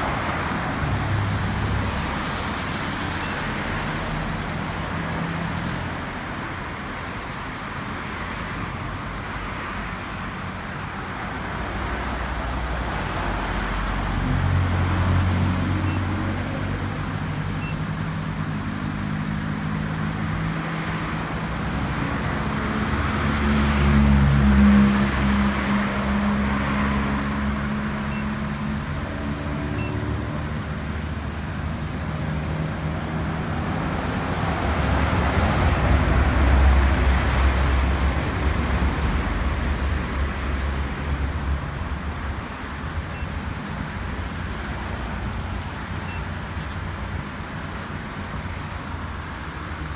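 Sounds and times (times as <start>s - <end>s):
road noise hiss: 0.0s - 49.9s.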